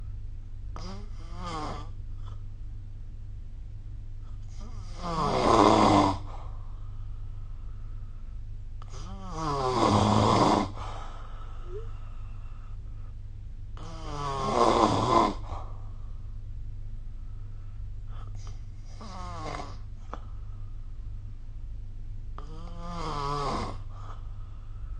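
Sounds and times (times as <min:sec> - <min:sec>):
steady low hum: 0:00.0 - 0:24.9
person snoring: 0:04.5 - 0:06.3, 0:08.8 - 0:10.9, 0:11.6 - 0:12.1, 0:13.8 - 0:15.6, 0:18.2 - 0:19.9, 0:22.4 - 0:24.2.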